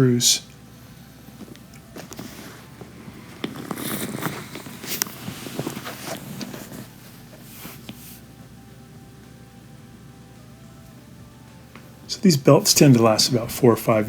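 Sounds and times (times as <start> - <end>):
rustling handling noise: 0.6 - 8.6.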